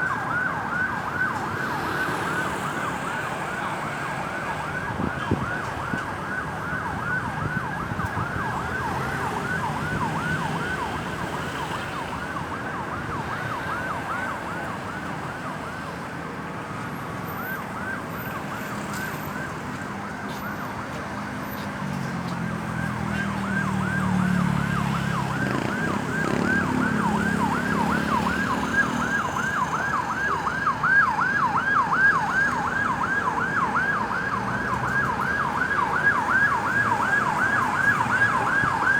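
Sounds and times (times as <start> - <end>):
ambulance siren yelping: 0.0 - 21.6, 22.4 - 38.9
low road vehicle rumble: 20.8 - 31.2.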